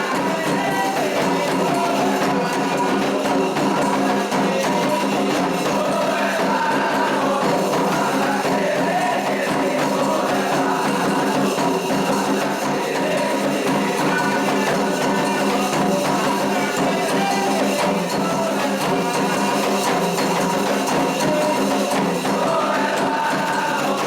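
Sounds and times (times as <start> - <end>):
percussion: 0.0 - 24.0
voices singing together: 0.0 - 24.0.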